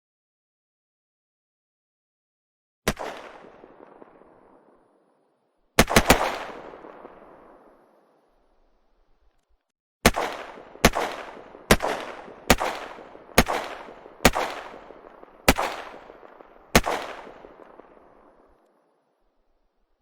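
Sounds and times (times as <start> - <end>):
gunshots with echoing tail: 2.9 - 5.2, 5.8 - 8.2, 10.0 - 18.6.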